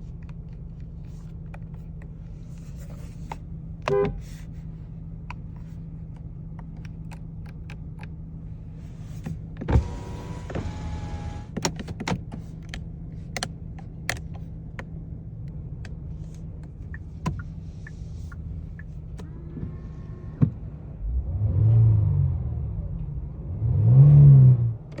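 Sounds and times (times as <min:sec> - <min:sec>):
car engine idling: 0:00.0 - 0:20.9
car engine revving: 0:09.7 - 0:11.6, 0:19.2 - 0:25.0.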